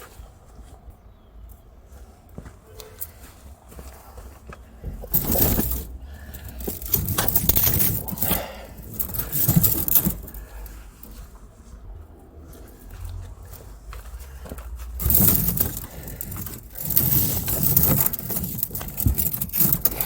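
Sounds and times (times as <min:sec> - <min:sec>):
hard objects clattering: 0:04.8 - 0:11.2, 0:12.6 - 0:20.0.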